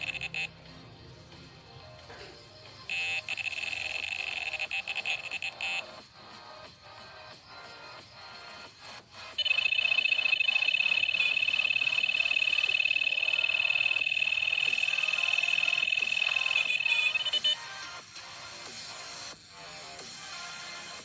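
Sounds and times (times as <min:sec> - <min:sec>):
pulsing electronic buzzing tone: 0:09.4 - 0:17.3.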